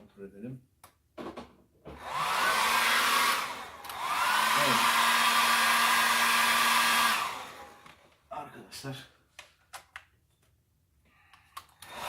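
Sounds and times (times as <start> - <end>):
hair dryer blowing air: 2.0 - 8.0.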